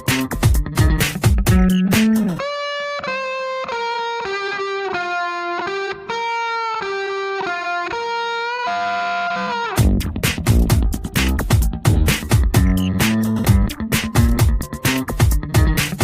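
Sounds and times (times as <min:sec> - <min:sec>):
drum and bass beat: 0:00.0 - 0:02.4, 0:09.8 - 0:16.0
slow electric guitar melody: 0:00.0 - 0:16.0.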